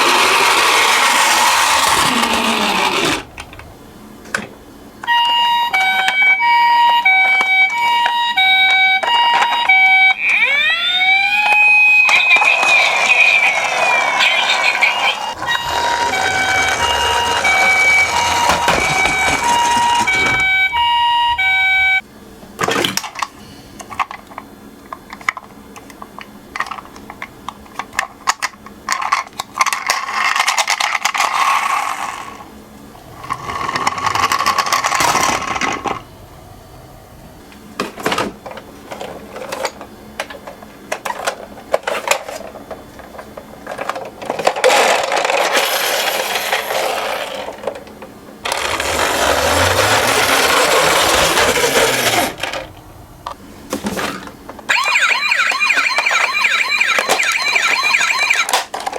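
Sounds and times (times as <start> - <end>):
toy cars rolling on a slope: 0.0 - 3.6, 11.4 - 21.1, 26.1 - 36.1, 38.4 - 52.8, 53.9 - 58.9
two-tone ambulance siren: 5.0 - 22.0, 48.5 - 52.0, 54.7 - 58.7.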